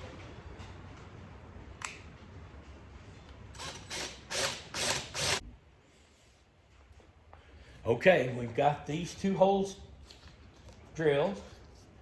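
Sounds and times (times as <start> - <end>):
drill bit cutting bursts: 3.6 - 5.4
power drill humming: 3.6 - 5.4.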